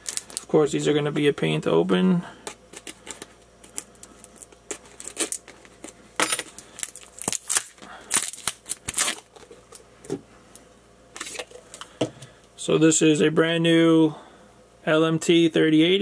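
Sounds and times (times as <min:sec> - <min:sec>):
packaging tearing and crinkling: 0:00.0 - 0:00.5, 0:02.7 - 0:09.8.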